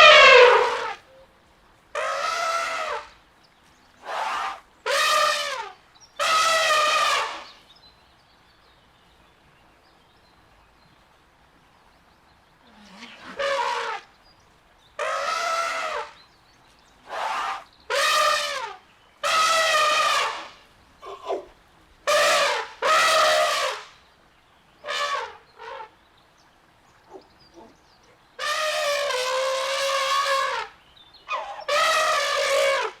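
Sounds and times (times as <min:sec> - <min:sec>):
elephant trumpeting: 0:00.0 - 0:01.1, 0:02.0 - 0:03.2, 0:04.0 - 0:07.5, 0:12.8 - 0:14.1, 0:15.0 - 0:16.2, 0:17.1 - 0:21.5, 0:22.1 - 0:23.9, 0:24.8 - 0:26.0, 0:28.4 - 0:33.0.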